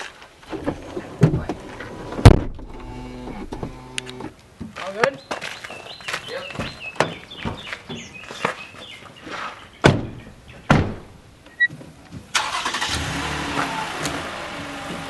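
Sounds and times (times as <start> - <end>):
heavy thumps: 1.2 - 4.3, 9.8 - 11.2
car engine running: 2.2 - 4.3.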